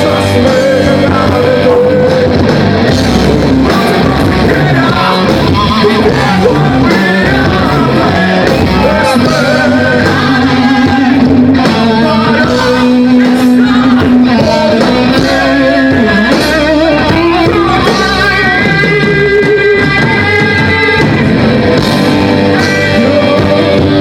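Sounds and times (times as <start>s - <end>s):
held sung vocal: 0.0s - 21.2s
rock band playing: 0.0s - 24.0s.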